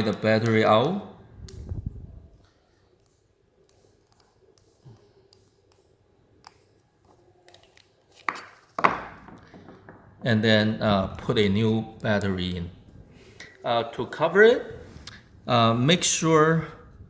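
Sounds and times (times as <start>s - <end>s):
small plastic clicks: 3.0s - 8.4s.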